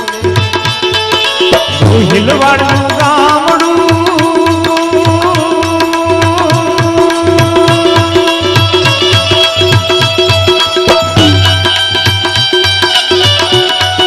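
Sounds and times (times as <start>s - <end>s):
hand drum rhythm: 0.0s - 14.0s.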